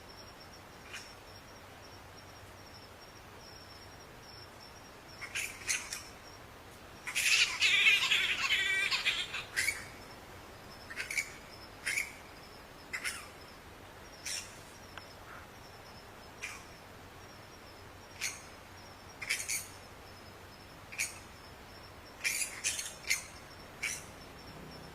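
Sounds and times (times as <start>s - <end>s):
bats squeaking: 5.1s - 6.4s, 7.0s - 10.1s, 10.8s - 13.5s, 14.1s - 15.2s, 16.4s - 16.8s, 18.0s - 19.9s, 20.9s - 21.3s, 22.1s - 24.9s
bats chittering: 7.0s - 10.0s, 18.1s - 18.5s, 19.2s - 19.8s, 22.1s - 24.9s.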